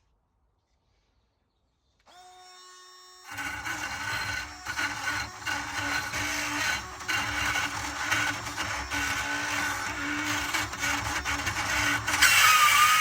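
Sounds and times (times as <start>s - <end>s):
drill bit grinding into metal: 3.3s - 13.0s
power drill spinning up: 3.3s - 13.0s.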